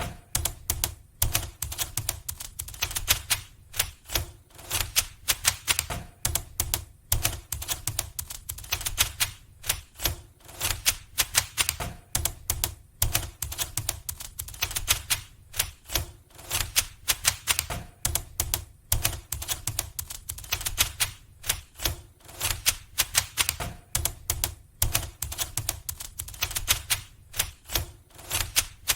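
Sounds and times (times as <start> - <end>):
keyboard key clicks: 16.6 - 27.8.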